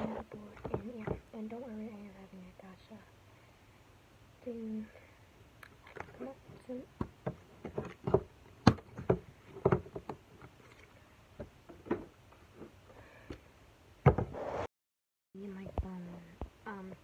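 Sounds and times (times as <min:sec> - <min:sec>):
clicks and knocks of objects handled: 0:05.6 - 0:12.7.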